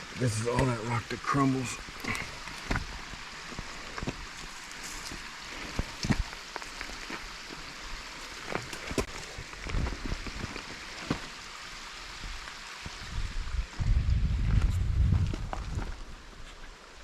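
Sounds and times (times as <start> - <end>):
steady hiss: 0.0 - 17.0
loose rock clicking and crunching: 1.8 - 11.4, 14.5 - 16.2
low rumble on microphone: 12.9 - 16.3.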